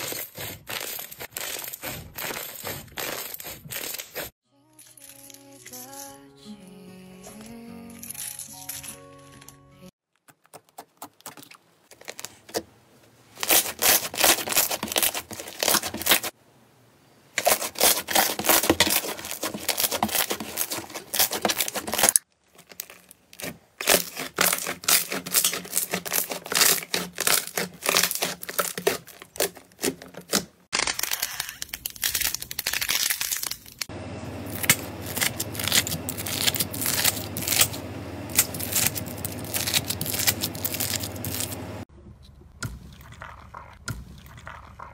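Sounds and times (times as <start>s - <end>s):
slime crackling and popping: 17.5s - 30.0s, 30.7s - 33.9s, 34.5s - 41.6s
low hum: 33.9s - 44.9s.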